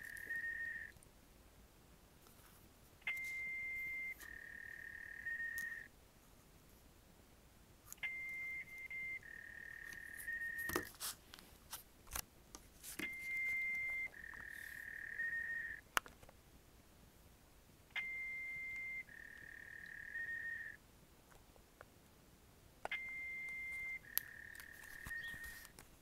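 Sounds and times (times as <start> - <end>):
electronic beep tones over phone line: 0.0 - 0.9, 3.0 - 5.9, 8.0 - 10.9, 13.0 - 15.8, 17.9 - 20.8, 22.9 - 25.7.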